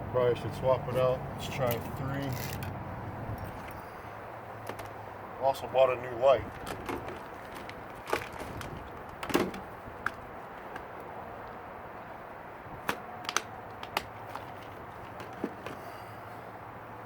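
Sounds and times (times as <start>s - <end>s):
fishing gear clicks and knocks: 1.6s - 3.9s, 4.6s - 5.0s, 6.5s - 10.9s, 12.8s - 15.9s.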